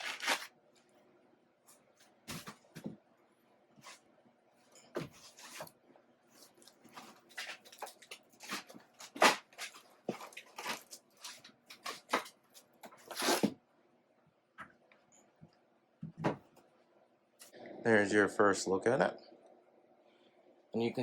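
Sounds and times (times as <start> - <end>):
packaging rustling: 0.0 - 0.5, 7.0 - 12.4.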